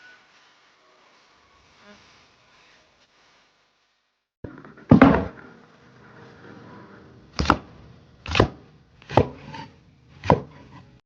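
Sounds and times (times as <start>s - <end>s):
heavy thud: 4.5s - 5.6s
sharp chops: 8.3s - 9.6s.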